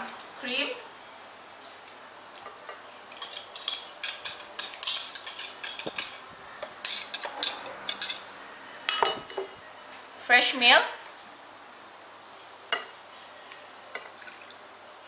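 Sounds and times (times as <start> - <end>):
utensil scraping a container: 3.2 - 8.3.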